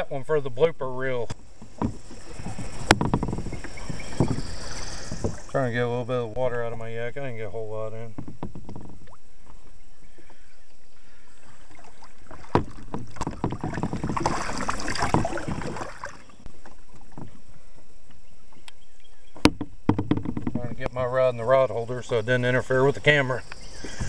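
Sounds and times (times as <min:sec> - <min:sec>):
water splashing and sloshing: 0:01.3 - 0:06.8, 0:07.9 - 0:17.9
knock on kayak hull: 0:01.6 - 0:04.4, 0:12.5 - 0:15.8, 0:19.4 - 0:20.8.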